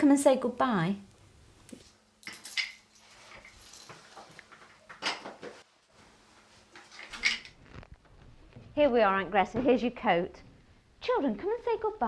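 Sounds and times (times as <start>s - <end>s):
crockery and cutlery clinking: 2.2s - 5.4s, 7.0s - 7.6s.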